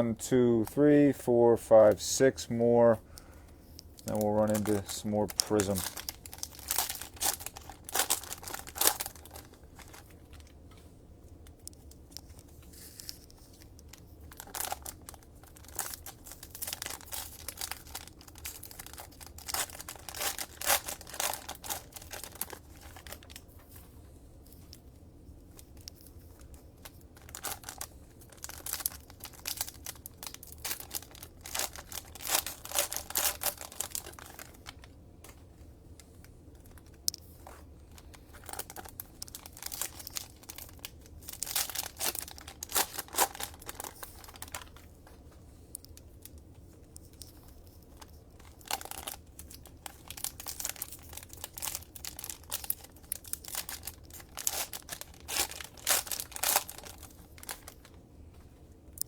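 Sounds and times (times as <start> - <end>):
card wrappers tearing and crinkling: 4.0 - 10.5, 12.7 - 23.4, 26.4 - 34.9, 36.6 - 44.9, 47.1 - 58.0.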